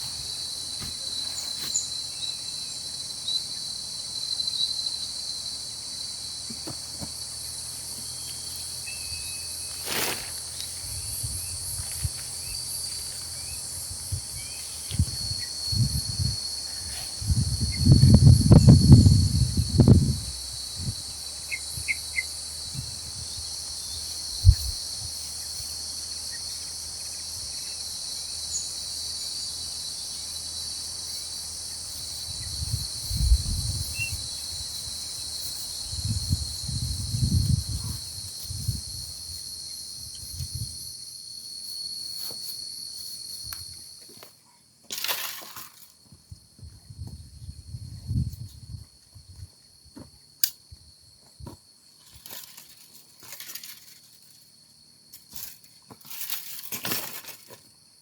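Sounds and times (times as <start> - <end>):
handling thumps and rustles: 0.0 - 1.9, 6.4 - 7.3, 9.7 - 10.9
insects shrilling: 0.0 - 44.0.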